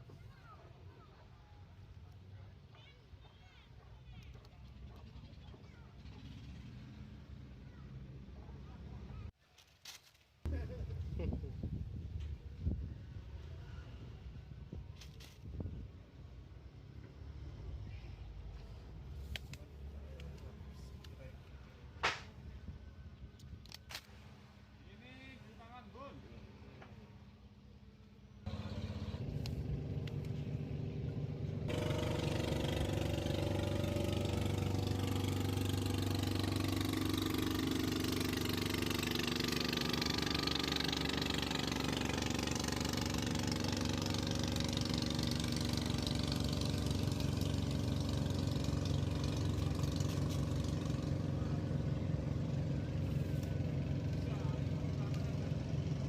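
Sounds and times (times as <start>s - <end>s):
small engine running: 4.2s - 8.1s, 28.4s - 56.0s.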